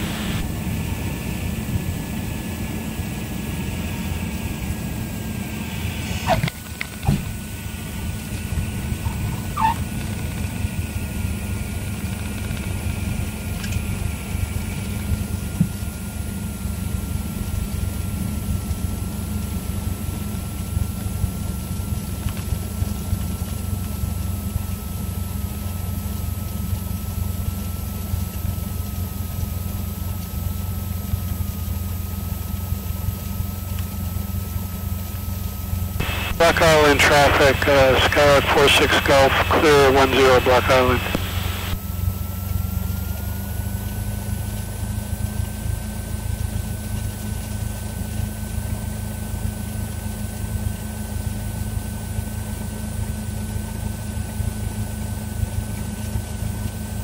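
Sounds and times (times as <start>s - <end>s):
airplane engine and propeller droning: 0.0s - 57.0s.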